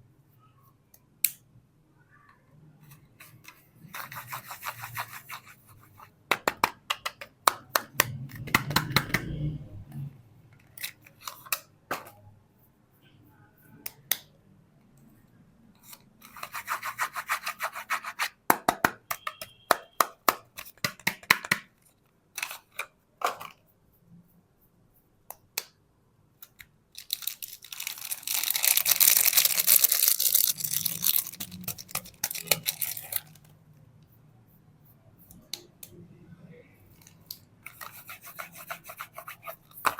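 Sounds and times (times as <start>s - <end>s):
wrapper crinkling and tearing: 27.0s - 33.5s.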